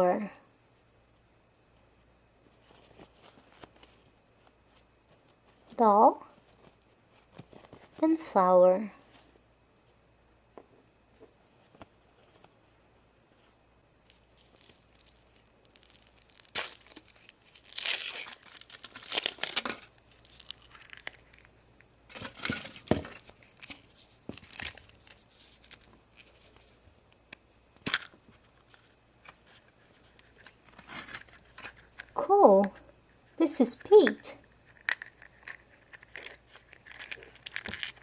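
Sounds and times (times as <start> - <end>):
foil wrapper tearing and crinkling: 14.1 - 26.5, 29.2 - 32.2.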